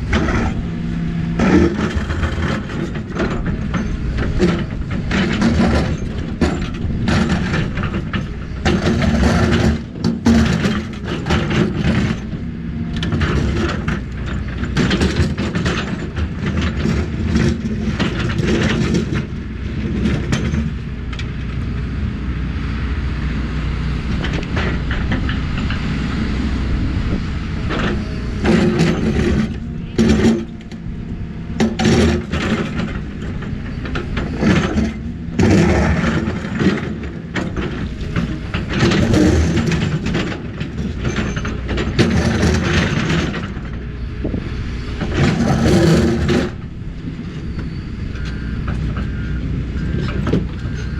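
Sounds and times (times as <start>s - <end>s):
bucket clanking and scraping dirt: 0.0s - 20.8s, 27.1s - 43.8s, 45.0s - 46.7s
excavator diesel engine running: 0.0s - 50.9s.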